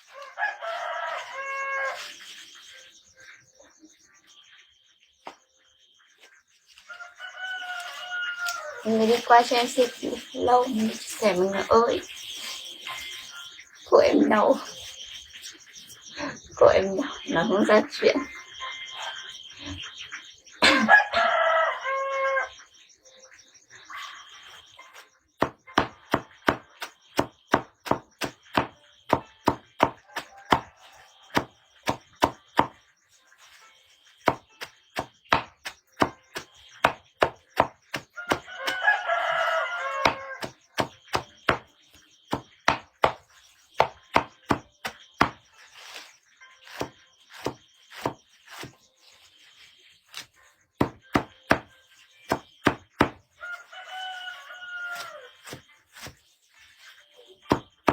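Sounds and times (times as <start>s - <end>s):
rooster crowing: 0.0s - 2.1s, 6.8s - 9.6s, 20.6s - 22.6s, 38.2s - 40.6s, 53.4s - 55.4s
axe chopping firewood: 25.4s - 30.7s, 31.4s - 32.8s, 35.0s - 38.8s, 39.9s - 41.6s, 42.3s - 43.2s, 43.8s - 48.8s, 50.1s - 51.7s, 52.3s - 53.2s, 54.9s - 56.2s, 57.5s - 57.9s.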